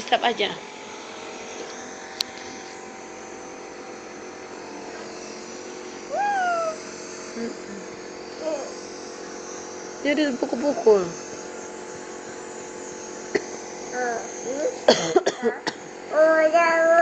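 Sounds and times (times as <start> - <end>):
nebulizer compressor humming: 0.0 - 17.0
child whining: 6.1 - 6.8, 8.4 - 8.8, 14.0 - 14.8, 15.5 - 17.0.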